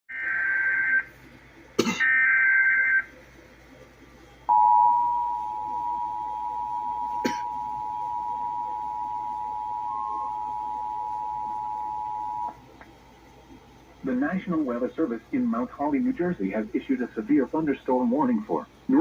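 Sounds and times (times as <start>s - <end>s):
two-tone attention signal: 4.5s - 12.6s.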